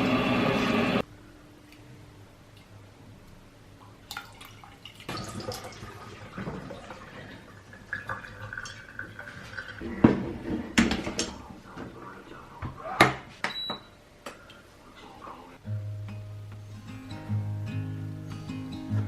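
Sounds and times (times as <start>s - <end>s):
water running in sink: 4.1s - 9.8s.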